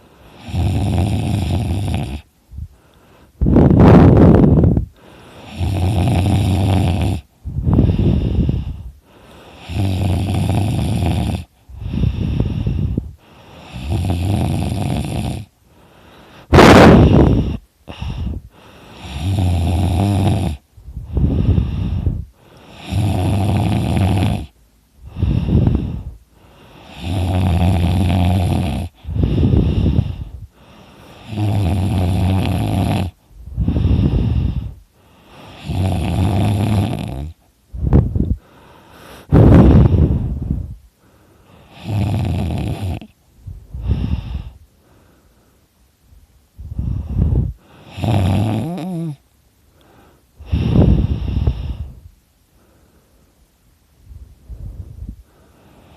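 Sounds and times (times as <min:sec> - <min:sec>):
man snoring loudly: 0:00.3 - 0:02.3, 0:05.4 - 0:08.8, 0:09.5 - 0:15.5, 0:16.5 - 0:26.1, 0:26.7 - 0:30.3, 0:31.1 - 0:37.4, 0:41.6 - 0:43.2, 0:46.8 - 0:49.2.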